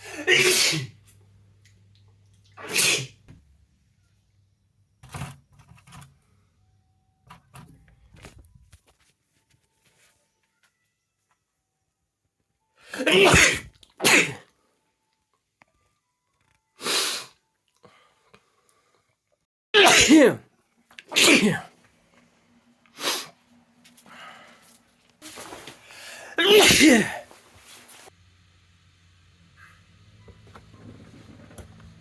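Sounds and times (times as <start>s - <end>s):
person sneezing: 0.0s - 1.0s, 2.6s - 3.2s, 12.9s - 14.4s, 19.8s - 20.4s, 21.1s - 21.7s, 23.0s - 23.4s, 25.2s - 27.4s.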